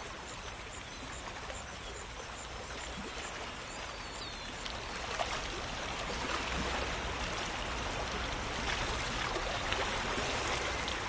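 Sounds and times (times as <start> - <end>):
small water splashes: 4.6 - 11.0.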